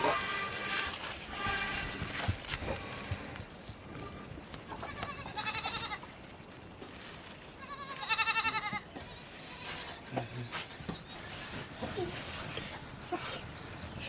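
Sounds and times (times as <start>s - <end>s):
goat bleating: 0.0s - 2.3s, 4.0s - 6.1s, 7.6s - 9.9s.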